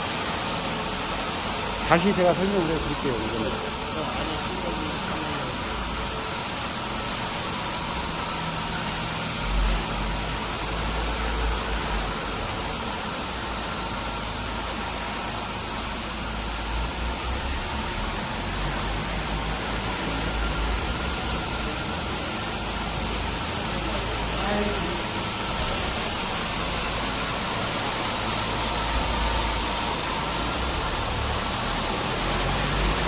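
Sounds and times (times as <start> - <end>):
water rushing noise: 0.8 - 13.2, 13.9 - 33.0.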